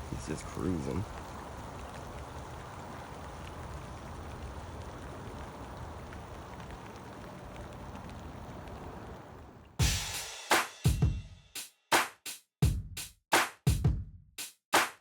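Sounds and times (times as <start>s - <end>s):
rain falling on water: 0.0s - 9.8s.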